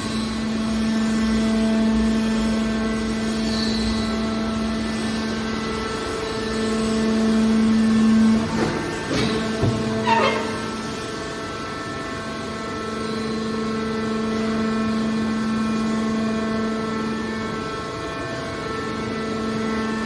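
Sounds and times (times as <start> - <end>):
hydraulic pump motor humming: 6.3 - 11.5
short knocks: 8.4 - 10.9.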